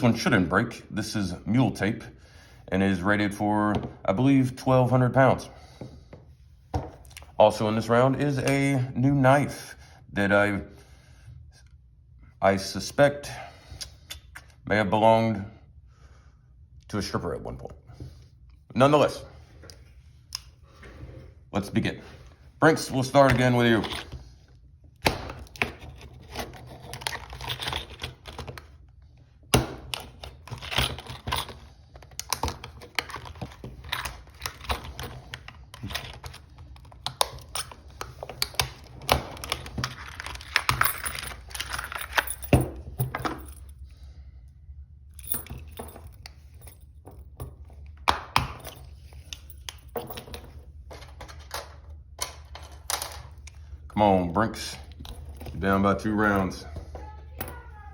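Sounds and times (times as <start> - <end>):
steady low hum: 0.0 - 57.9
lock pick clicking and scraping: 25.0 - 28.7, 29.8 - 42.5.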